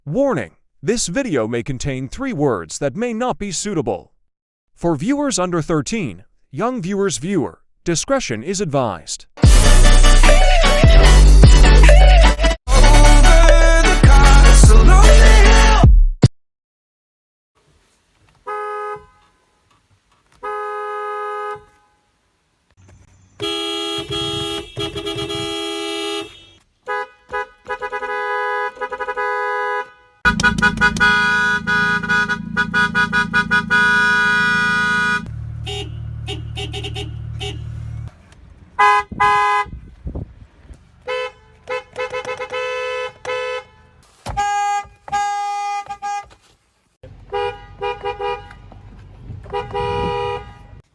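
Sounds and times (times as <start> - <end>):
car horns honking: 18.4 - 19.6, 20.3 - 22.2, 23.4 - 38.1, 38.7 - 39.9, 41.0 - 46.4, 47.0 - 50.8.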